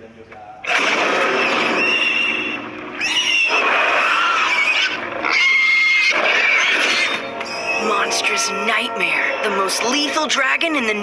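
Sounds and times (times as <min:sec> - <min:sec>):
cartoon dragon screeching: 0:00.7 - 0:08.0.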